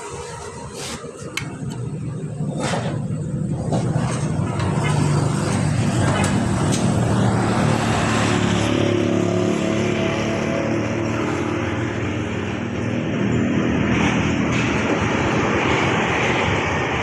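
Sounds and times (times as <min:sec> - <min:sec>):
engine humming: 0:00.0 - 0:16.9.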